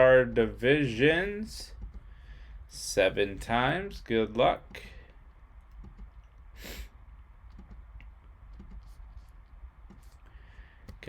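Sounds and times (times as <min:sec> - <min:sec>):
computer mouse clicks: 0:01.8 - 0:02.1, 0:05.7 - 0:06.4, 0:07.5 - 0:10.2
short breathy hiss: 0:06.6 - 0:07.0.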